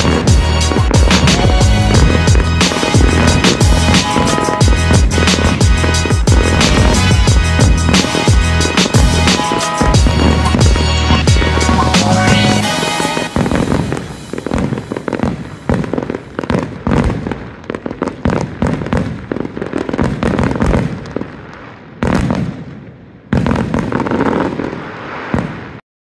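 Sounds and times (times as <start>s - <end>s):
fireworks bangs and crackling: 0.0s - 25.8s
low rumble: 4.6s - 9.2s.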